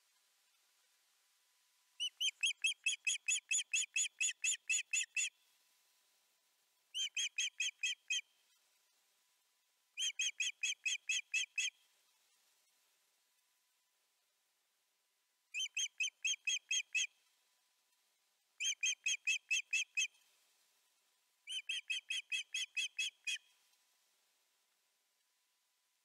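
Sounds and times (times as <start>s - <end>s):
bird alarm calls high whistles: 2.0s - 5.3s, 15.6s - 17.1s, 18.6s - 20.1s, 21.5s - 23.4s.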